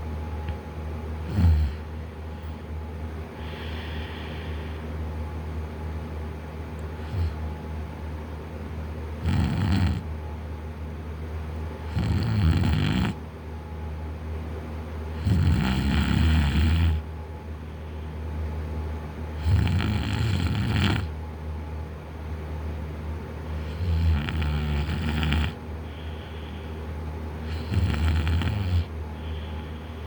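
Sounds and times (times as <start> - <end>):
man snoring: 1.2 - 1.9, 9.2 - 10.1, 11.9 - 13.2, 15.2 - 17.1, 19.4 - 21.1, 23.6 - 26.0, 27.4 - 29.4
quiet breathing: 3.3 - 5.1, 17.5 - 18.4, 25.1 - 30.0.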